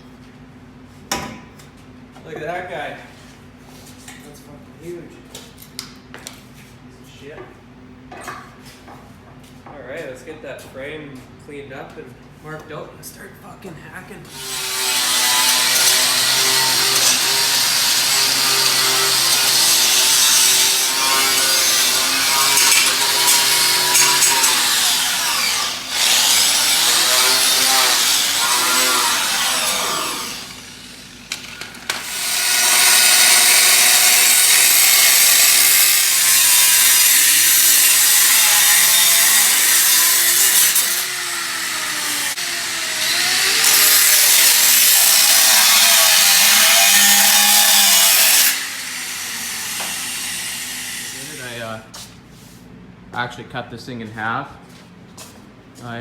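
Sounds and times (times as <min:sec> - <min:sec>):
angle grinder on steel: 0:14.3 - 0:51.6.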